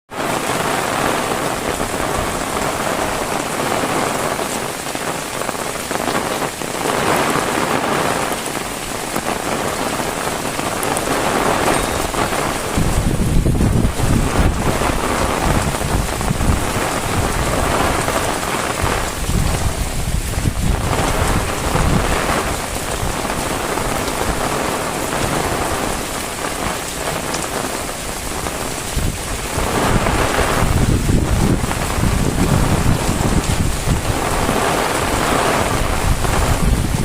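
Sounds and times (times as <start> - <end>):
heavy rain falling: 0.1 - 37.0
low rumbling: 11.0 - 18.0.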